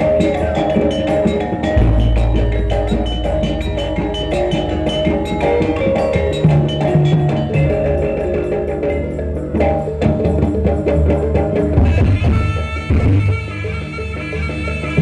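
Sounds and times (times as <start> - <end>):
drums beating: 0.0 - 8.5
sustained pitched tones: 1.3 - 7.5.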